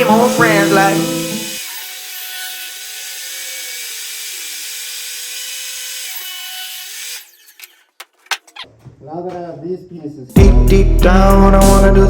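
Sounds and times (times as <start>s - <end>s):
power saw cutting wood: 0.0s - 7.9s.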